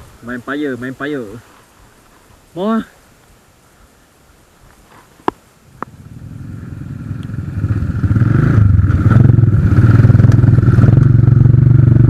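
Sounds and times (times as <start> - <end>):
small motorcycle engine running: 5.9 - 12.0.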